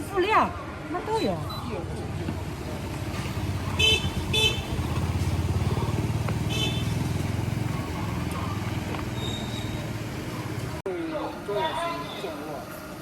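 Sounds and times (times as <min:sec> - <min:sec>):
motorcycle engine running: 0:02.3 - 0:10.8.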